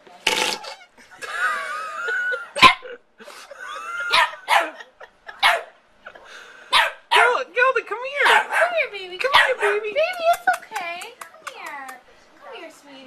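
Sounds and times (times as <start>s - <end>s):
dog barking: 2.6s - 2.9s, 4.1s - 4.8s, 5.4s - 5.8s, 6.7s - 7.4s, 8.2s - 9.9s.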